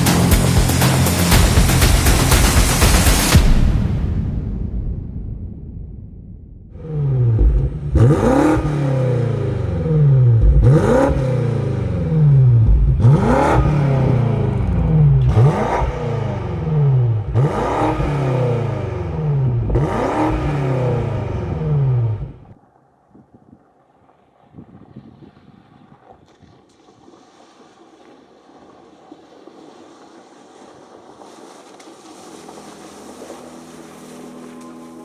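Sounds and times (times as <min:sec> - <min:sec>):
car engine revving: 0:00.0 - 0:03.5, 0:06.6 - 0:22.6.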